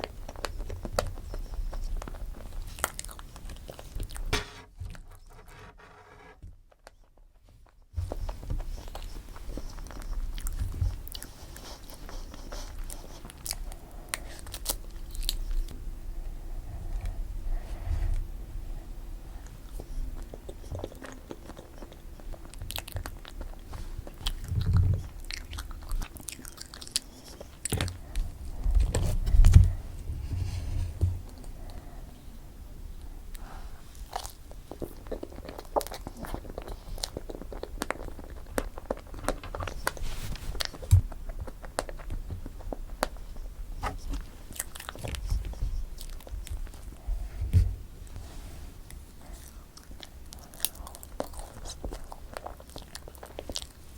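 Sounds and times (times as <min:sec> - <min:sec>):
biting and chewing cake: 0:00.0 - 0:15.9, 0:19.4 - 0:29.8, 0:33.3 - 0:48.2, 0:48.9 - 0:53.9.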